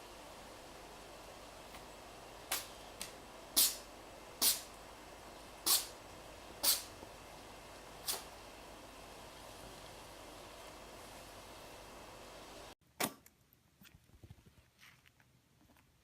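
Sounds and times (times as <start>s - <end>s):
faint steady hiss: 0.0s - 16.0s
rabbit sneezing: 4.4s - 4.7s, 5.6s - 6.0s, 6.6s - 7.0s, 8.0s - 8.3s.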